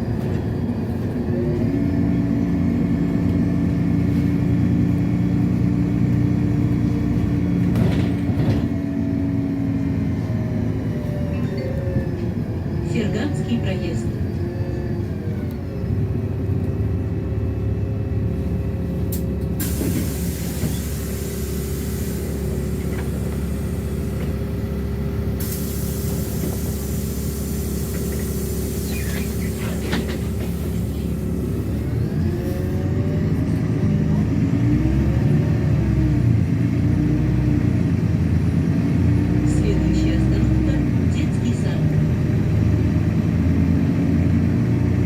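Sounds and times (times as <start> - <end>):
bus engine rumbling: 0.0 - 45.0
air hissing: 19.6 - 24.1, 25.4 - 31.2.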